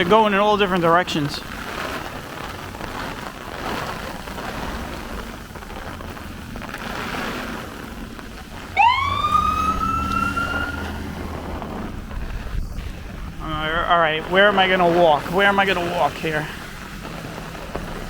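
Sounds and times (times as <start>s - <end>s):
rain: 0.0s - 18.0s
wind: 0.0s - 18.0s
emergency vehicle siren: 8.7s - 12.1s.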